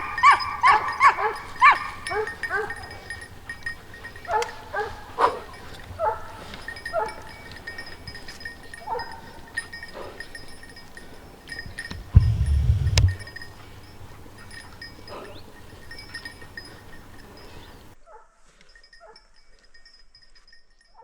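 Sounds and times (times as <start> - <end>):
dogs barking and baying: 0.0 - 7.5, 8.7 - 10.3
sharp click: 11.9 - 13.3
wind rumble on microphone: 11.9 - 13.7.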